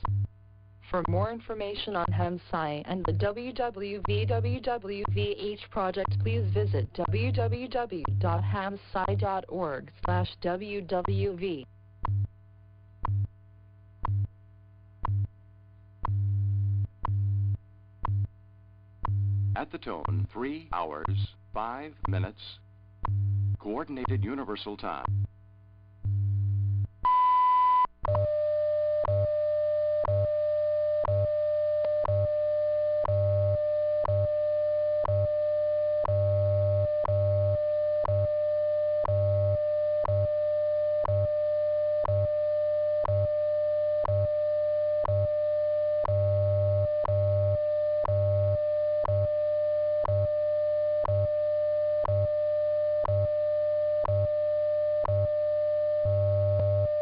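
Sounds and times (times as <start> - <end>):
low pulsing buzz: 0.0 - 57.0
steady lower audio tone: 0.0 - 57.0
long high beep: 27.1 - 32.4.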